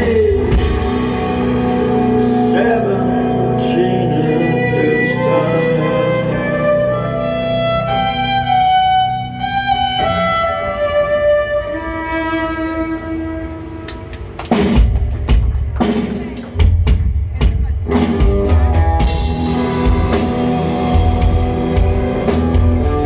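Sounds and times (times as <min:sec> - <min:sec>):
rock band playing: 0:00.0 - 0:23.0
violin long sliding notes: 0:01.0 - 0:13.9.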